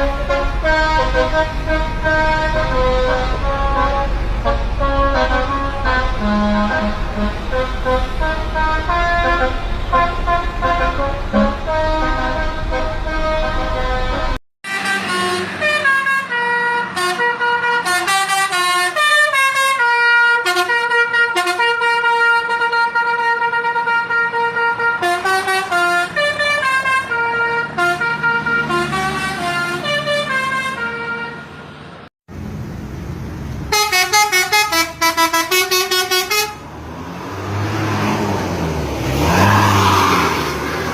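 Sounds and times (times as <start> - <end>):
low engine rumble: 0.0 - 15.0, 31.7 - 37.0
bus musical horn playing tunes: 0.0 - 32.1, 33.7 - 36.7.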